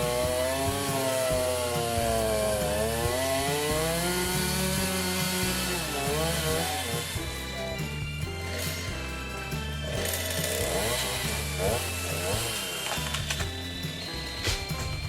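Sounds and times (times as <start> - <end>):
chainsaw cutting wood: 0.0 - 15.0.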